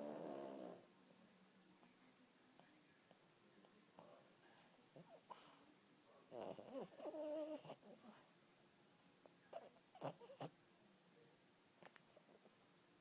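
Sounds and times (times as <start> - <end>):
dog snoring: 0.0 - 0.9, 6.3 - 8.2, 9.5 - 10.5.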